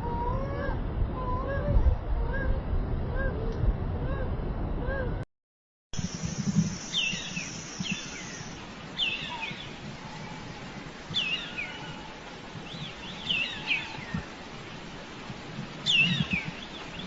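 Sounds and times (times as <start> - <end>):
bird chirping: 6.0 - 9.8
steady background hiss: 6.0 - 17.0.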